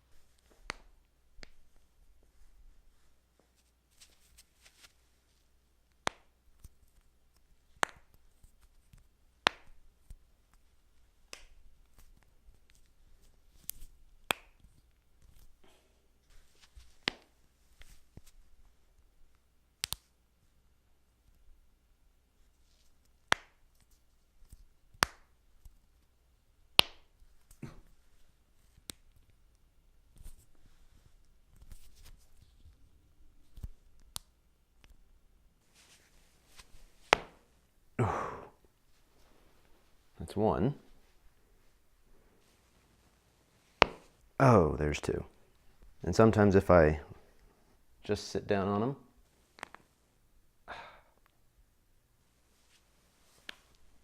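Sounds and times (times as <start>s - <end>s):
faint rustling: 35.6s - 37.7s.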